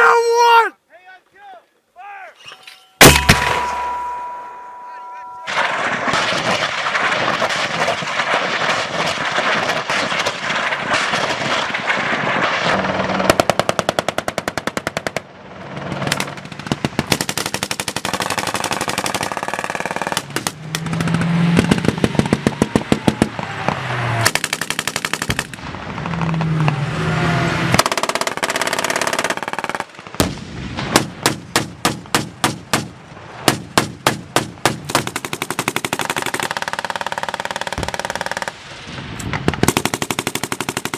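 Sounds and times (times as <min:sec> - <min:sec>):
sharp gunshots: 0:03.0 - 0:04.4, 0:05.5 - 0:15.3, 0:16.0 - 0:26.6, 0:27.7 - 0:38.6
machine guns automatic fire: 0:05.5 - 0:23.3, 0:24.3 - 0:26.2, 0:27.8 - 0:30.0, 0:33.5 - 0:38.6, 0:39.5 - 0:40.9.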